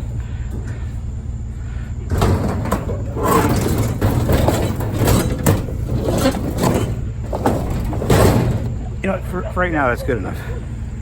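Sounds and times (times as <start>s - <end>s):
steady low rumble: 0.0s - 11.0s
metal cabinet scraping and clattering: 1.9s - 10.0s.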